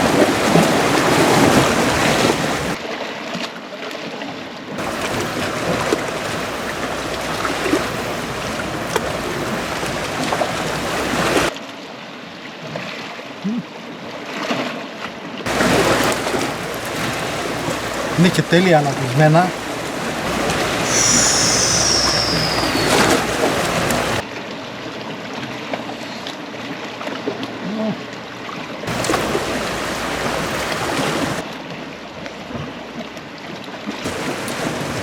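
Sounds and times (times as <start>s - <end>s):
waves washing on rocky shore: 0.0s - 2.8s, 4.8s - 11.5s, 15.5s - 24.2s, 28.9s - 31.4s, 34.1s - 35.0s
wind buffeting microphone: 4.8s - 11.5s, 15.5s - 24.2s.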